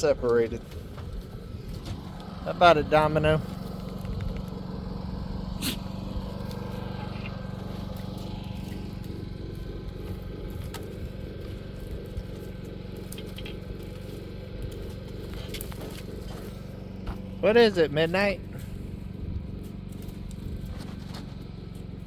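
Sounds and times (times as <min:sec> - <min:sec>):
engine droning: 0:00.0 - 0:22.0
faint clicks: 0:03.8 - 0:04.6.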